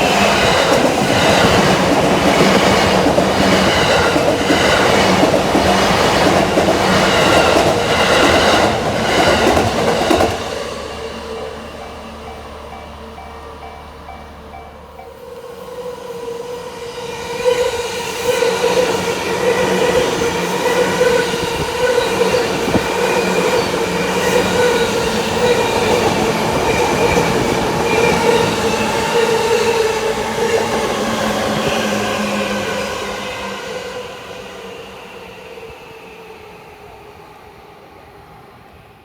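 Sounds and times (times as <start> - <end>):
electric train rail noise: 0.0 - 39.0
level-crossing bell dinging: 11.0 - 15.4.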